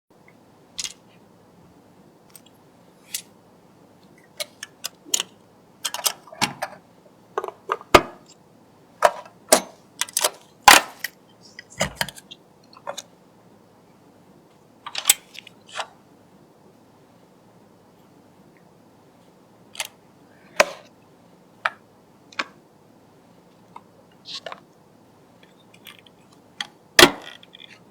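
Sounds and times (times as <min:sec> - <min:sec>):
computer hardware clicks and clatters: 0:00.8 - 0:01.0, 0:04.2 - 0:06.8.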